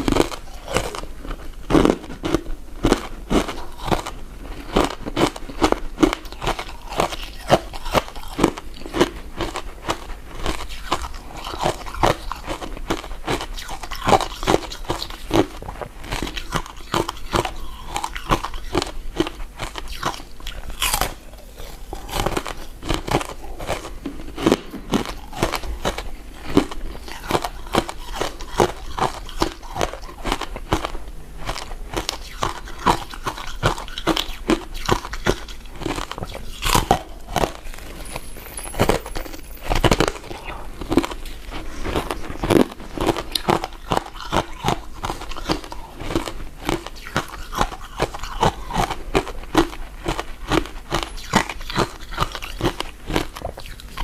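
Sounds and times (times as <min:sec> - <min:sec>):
person chewing sticky food: 0:00.0 - 0:54.0.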